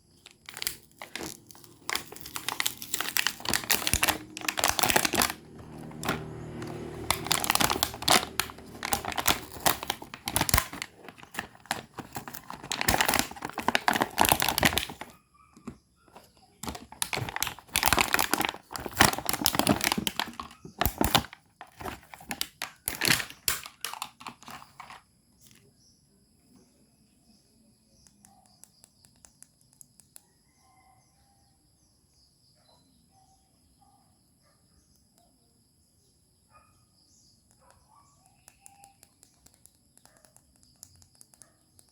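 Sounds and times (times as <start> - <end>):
packaging crinkling and tearing: 0.1 - 25.0.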